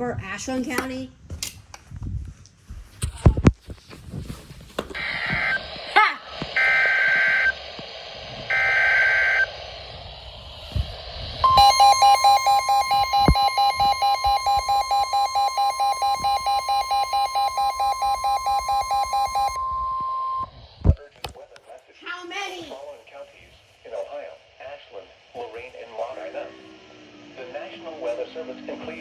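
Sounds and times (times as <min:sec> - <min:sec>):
rapid alarm beeping: 0:06.6 - 0:07.6, 0:08.5 - 0:09.5, 0:11.4 - 0:20.5
steady warning alarm tone: 0:08.5 - 0:09.5, 0:11.4 - 0:20.5
screeching data bursts: 0:11.5 - 0:20.4.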